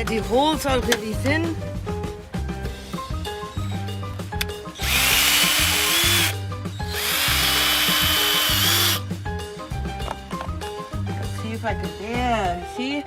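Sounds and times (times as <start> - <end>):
background music: 0.0 - 13.0
power drill whining: 4.8 - 9.0.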